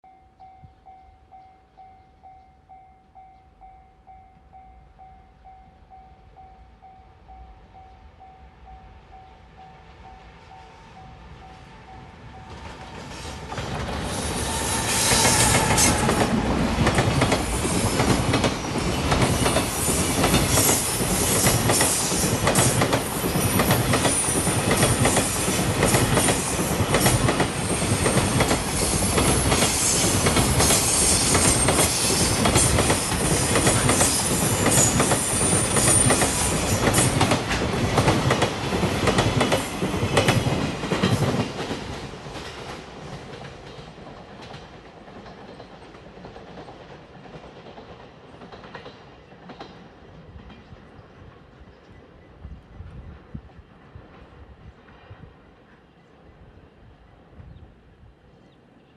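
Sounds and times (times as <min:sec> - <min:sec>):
train wheels clattering over rails: 0:12.5 - 0:50.7.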